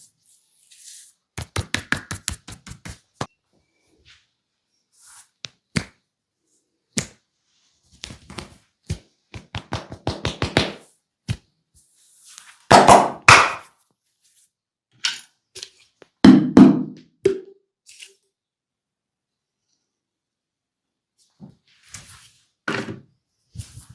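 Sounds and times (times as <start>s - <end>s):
hands tapping and slapping body: 1.4s - 3.3s, 7.9s - 11.4s.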